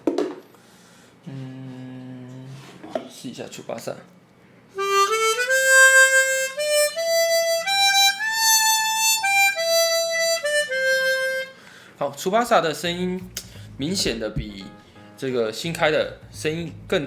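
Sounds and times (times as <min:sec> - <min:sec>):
harmonica playing a scale: 0:04.8 - 0:11.7.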